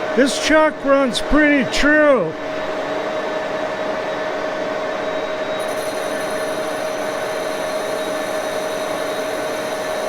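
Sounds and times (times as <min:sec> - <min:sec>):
lathe running with whine: 0:04.9 - 0:10.0.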